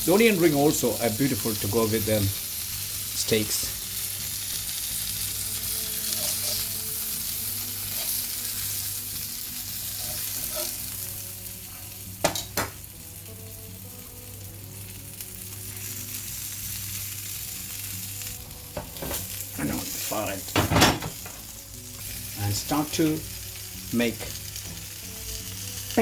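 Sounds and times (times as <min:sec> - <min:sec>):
food sizzling in a pan: 0:00.0 - 0:26.0.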